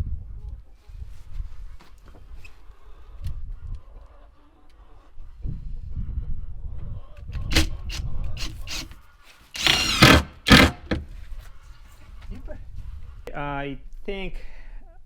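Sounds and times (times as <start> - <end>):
knocks of wood and tools: 9.6 - 11.1.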